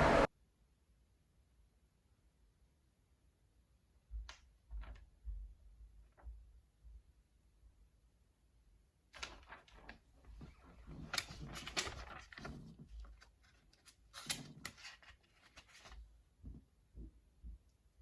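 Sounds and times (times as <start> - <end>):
packaging rustling and crinkling: 9.2 - 16.1.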